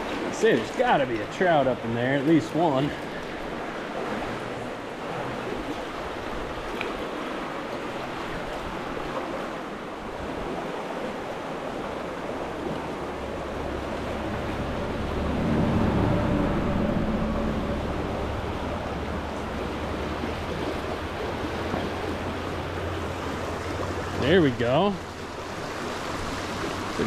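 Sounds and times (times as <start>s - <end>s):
stream rushing over rocks: 0.0s - 27.0s
low rumble: 13.4s - 20.5s.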